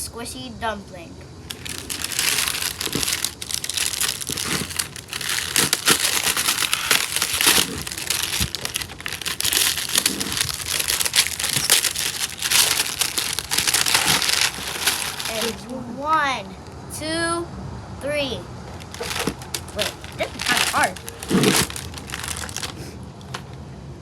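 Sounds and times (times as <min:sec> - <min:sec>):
packaging crinkling: 0:01.5 - 0:15.7, 0:18.7 - 0:23.5.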